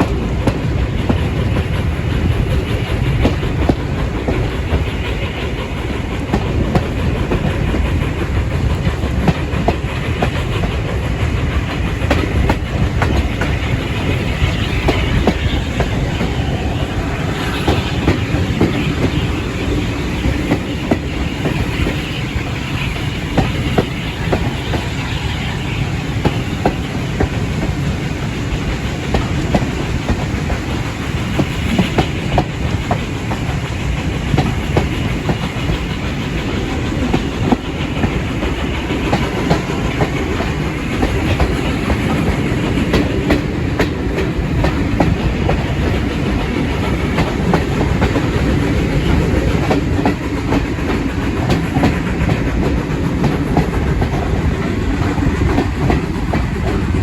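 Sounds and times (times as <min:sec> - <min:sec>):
train rumbling: 0:00.0 - 0:57.0.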